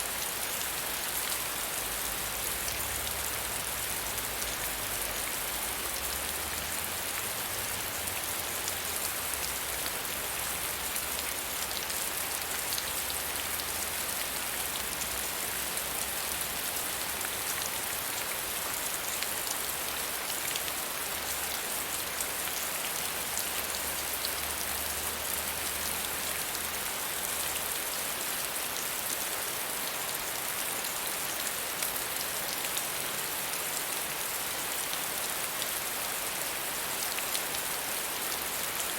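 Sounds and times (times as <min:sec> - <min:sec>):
soft rain pattering: 0:00.0 - 0:38.9.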